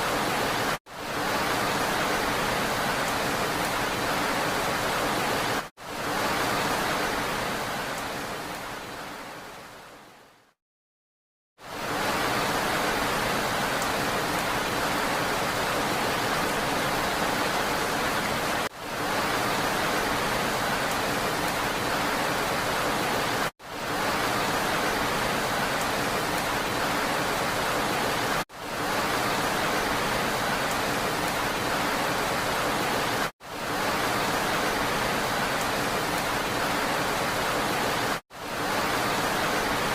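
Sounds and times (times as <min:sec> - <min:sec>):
steady rain: 0:00.0 - 0:10.6, 0:11.6 - 0:39.9.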